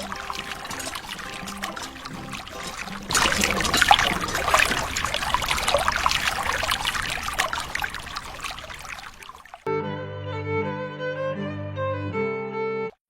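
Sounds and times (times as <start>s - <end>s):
water pouring and splashing: 0.0s - 9.7s.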